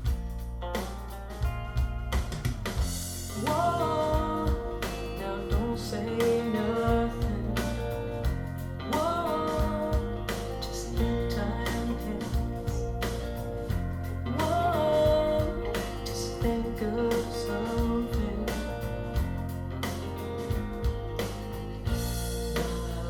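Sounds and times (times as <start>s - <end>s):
bass line: 0.0s - 23.0s
drums: 0.0s - 23.0s
guitar: 0.0s - 23.0s
song over speakers: 2.3s - 23.0s
person singing: 3.3s - 13.4s, 14.2s - 19.5s, 21.9s - 23.0s.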